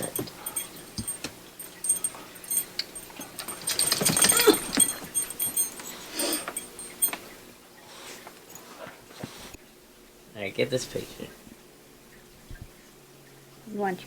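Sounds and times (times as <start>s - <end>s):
dog vocalizing: 0.0s - 7.2s
rustling: 0.0s - 9.6s.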